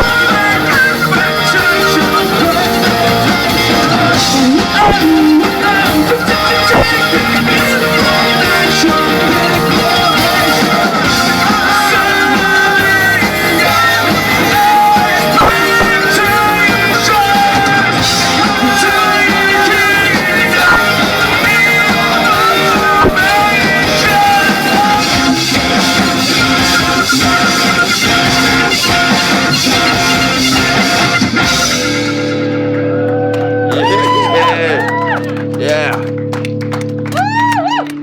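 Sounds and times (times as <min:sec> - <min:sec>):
person singing: 0:00.0 - 0:28.0
rock band playing: 0:00.0 - 0:38.0.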